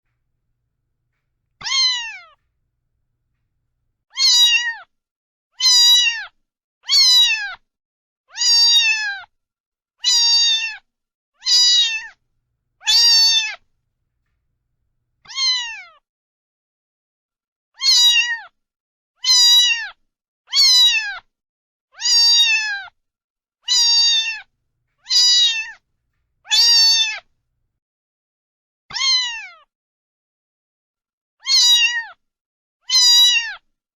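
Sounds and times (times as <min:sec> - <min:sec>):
cat meowing: 0:01.6 - 0:02.4, 0:04.1 - 0:04.7, 0:11.5 - 0:12.2, 0:12.8 - 0:13.6, 0:15.3 - 0:15.8, 0:23.7 - 0:25.8, 0:26.4 - 0:27.3, 0:31.4 - 0:32.0, 0:32.9 - 0:33.6.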